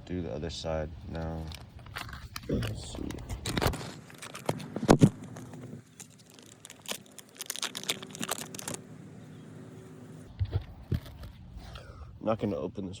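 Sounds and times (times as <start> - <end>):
crinkling and rustling: 1.1 - 8.9, 10.3 - 11.5.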